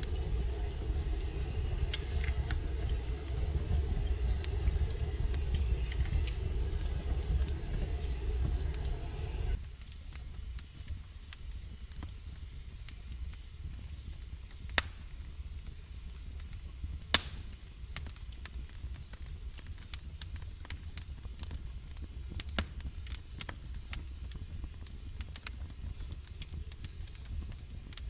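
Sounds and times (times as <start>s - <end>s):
low steady rumble: 0.0s - 9.6s
loud pops of burning wood: 0.0s - 10.6s, 14.6s - 15.3s, 16.4s - 28.0s
logs crackling in a fireplace: 0.0s - 28.0s.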